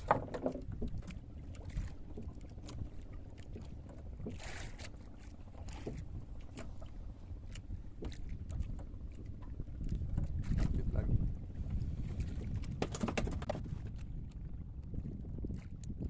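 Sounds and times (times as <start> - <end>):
water around a boat: 0.0 - 16.0
wind on microphone: 0.0 - 16.0
knocks and clicks on board: 12.8 - 13.6.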